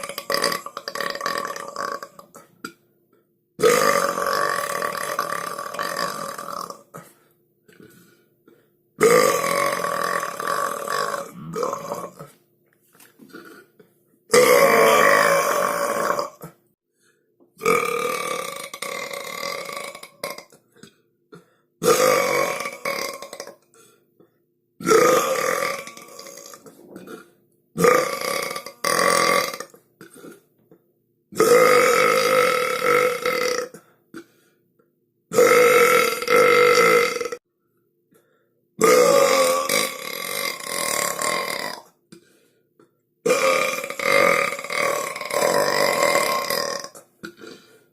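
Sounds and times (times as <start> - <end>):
loud drawn-out belches: 0.0 - 2.4, 3.6 - 7.0, 9.0 - 12.4, 14.3 - 16.6, 17.6 - 20.6, 21.8 - 23.6, 24.8 - 30.4, 31.4 - 33.8, 35.3 - 37.4, 38.8 - 41.9, 43.3 - 47.7.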